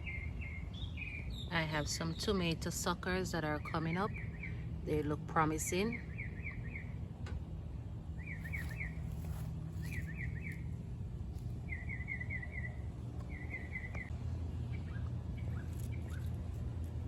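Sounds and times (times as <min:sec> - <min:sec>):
steady low rumble: 0:00.0 - 0:17.0
songbird chirping: 0:08.2 - 0:16.4.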